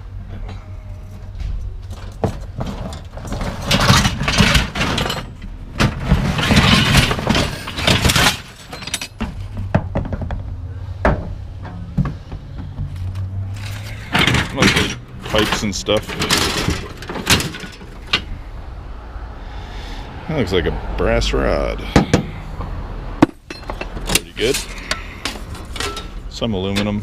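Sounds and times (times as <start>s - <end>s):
scrap metal clanking: 1.4s - 18.4s, 23.2s - 27.0s.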